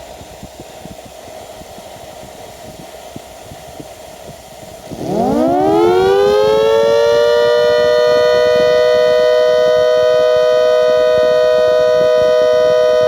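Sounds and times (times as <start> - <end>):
siren two-tone wail: 5.0 - 13.0.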